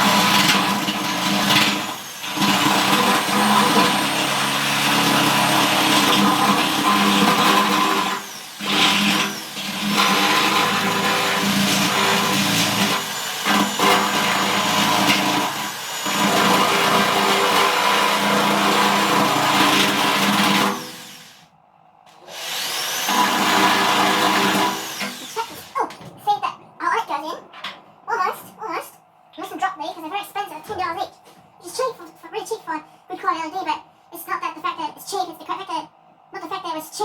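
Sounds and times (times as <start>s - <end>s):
electric power tool running: 0.0s - 21.5s, 22.2s - 25.8s.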